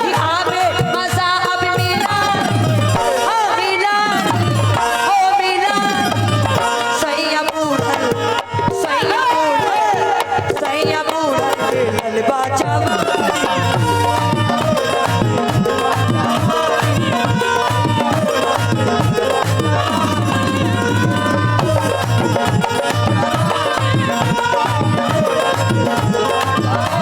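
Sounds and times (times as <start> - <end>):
tabla drumming: 0.0 - 27.0
wavering melody line: 12.7 - 27.0.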